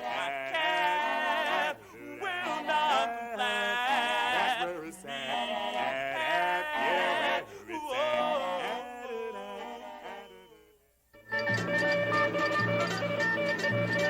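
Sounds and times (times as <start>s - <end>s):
voices singing: 0.0s - 10.9s.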